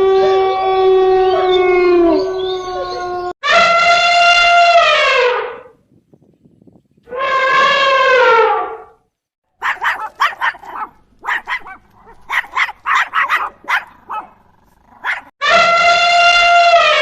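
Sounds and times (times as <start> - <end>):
dog barking: 9.6 - 15.3.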